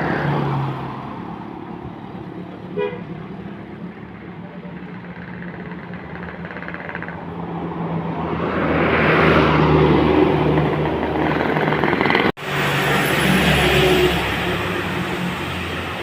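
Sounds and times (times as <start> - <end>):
bus engine and tyre noise: 0.0 - 16.0.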